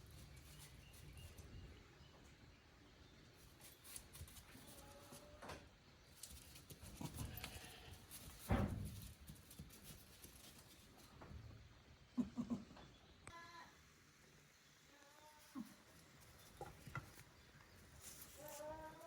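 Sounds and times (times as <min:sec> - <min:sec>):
goat bleating: 0:07.0 - 0:08.0, 0:12.2 - 0:13.7.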